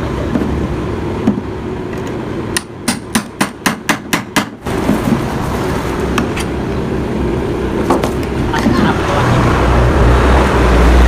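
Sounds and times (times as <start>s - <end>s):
hammer striking metal: 2.5s - 4.7s.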